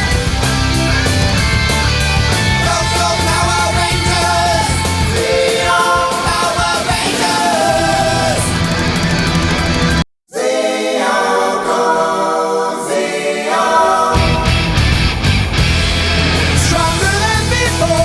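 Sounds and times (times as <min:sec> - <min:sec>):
rock music with singing: 0:00.0 - 0:10.0, 0:13.7 - 0:18.0.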